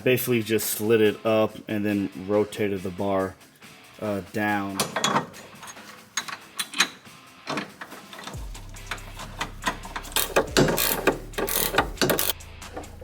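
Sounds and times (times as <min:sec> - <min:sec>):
metallic clicks and knocks: 0:04.7 - 0:13.0
ratchet ticking: 0:05.6 - 0:13.0.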